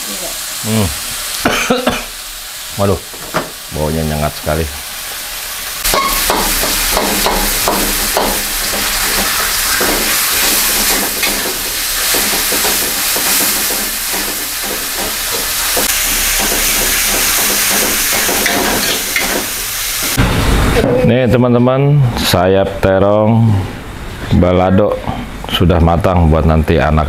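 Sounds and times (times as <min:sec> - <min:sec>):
food sizzling in hot oil: 0:00.0 - 0:20.6
spatula scraping and tapping pan: 0:05.9 - 0:20.2.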